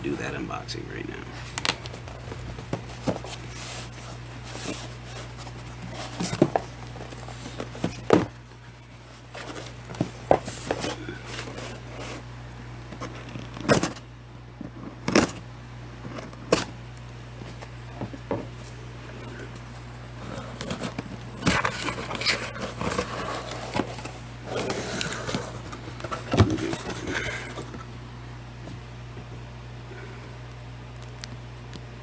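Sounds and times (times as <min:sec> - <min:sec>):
steady low hum: 0:00.0 - 0:32.0
cardboard box being handled: 0:01.4 - 0:12.3.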